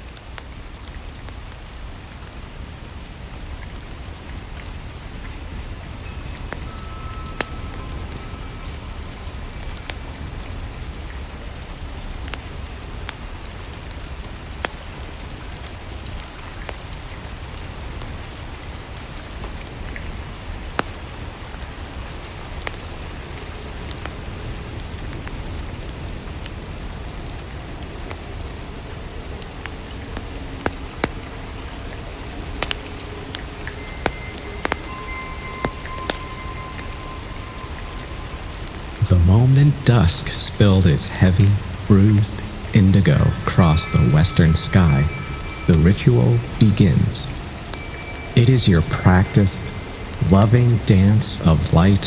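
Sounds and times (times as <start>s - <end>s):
steady rainfall: 0.0s - 52.0s
sharp drips and pops: 29.3s - 39.1s.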